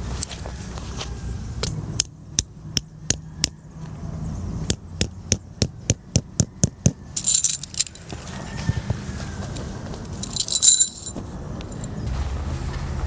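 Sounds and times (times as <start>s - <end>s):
short metallic jingle: 7.2s - 8.1s, 10.2s - 11.2s.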